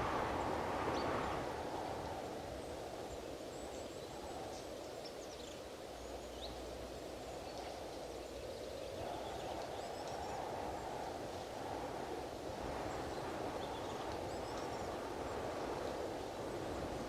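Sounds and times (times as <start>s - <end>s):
strong gusty wind: 0.0s - 4.8s, 8.9s - 17.0s.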